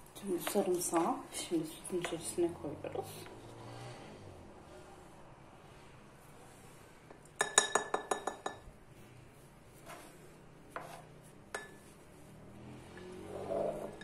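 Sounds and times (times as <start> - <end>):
spoon clinking against glass: 7.4 - 8.7.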